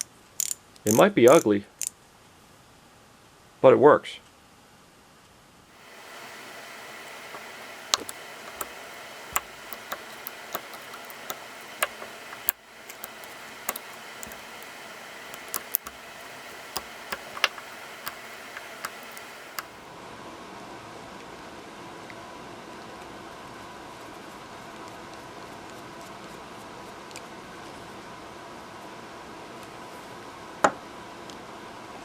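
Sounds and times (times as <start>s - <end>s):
steady hiss: 5.8s - 19.8s
ratchet clicking: 6.0s - 19.8s.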